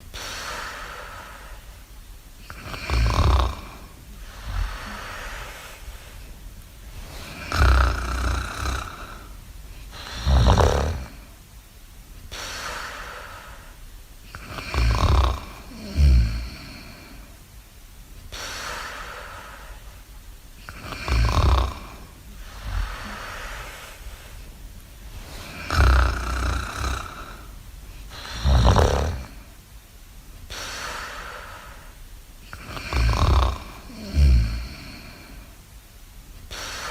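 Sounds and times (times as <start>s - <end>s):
breathy exhale: 0.1s - 1.8s, 2.6s - 6.4s, 12.3s - 13.8s, 20.7s - 29.6s, 30.5s - 35.6s, 36.5s - 36.9s
low fluttering snores: 2.5s - 5.9s, 7.0s - 11.3s, 14.3s - 17.3s, 20.7s - 23.7s, 25.2s - 29.5s, 32.5s - 35.5s.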